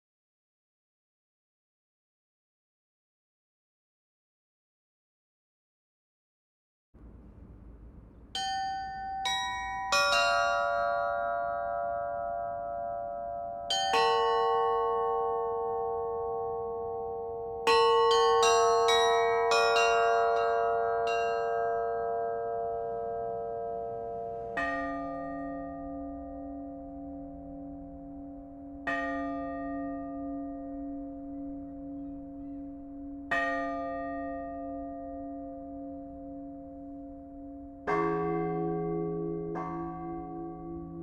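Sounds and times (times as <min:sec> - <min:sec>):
church bells ringing: 0:07.0 - 0:41.0
lower bell: 0:07.0 - 0:41.0
deep bell strokes: 0:20.2 - 0:41.0.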